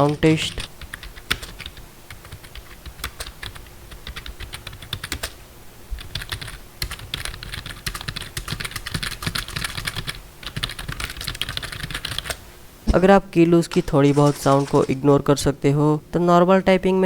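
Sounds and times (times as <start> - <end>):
typing on membrane keyboard: 0.8 - 5.4, 6.0 - 12.4.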